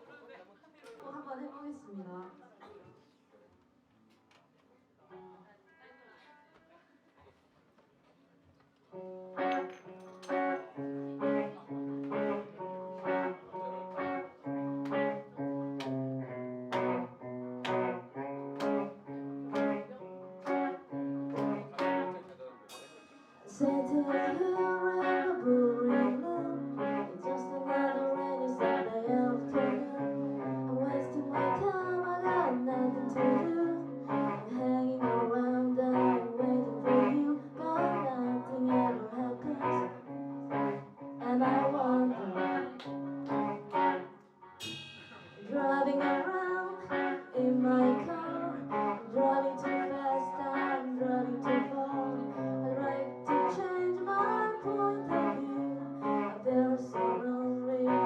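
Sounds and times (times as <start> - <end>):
electric guitar: 8.9 - 58.0
bass guitar: 9.0 - 22.2, 23.6 - 44.9
drums: 21.3 - 24.5, 43.3 - 46.2
person singing: 23.4 - 44.1, 45.2 - 58.0.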